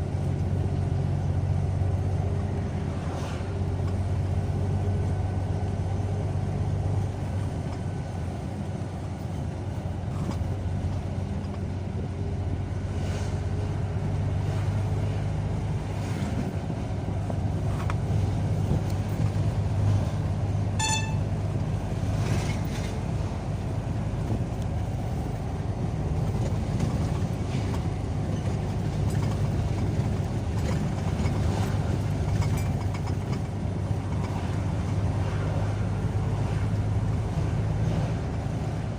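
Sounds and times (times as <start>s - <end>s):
car engine and tyre rumble: 0.0s - 38.9s
short pitched beep: 20.8s - 21.3s.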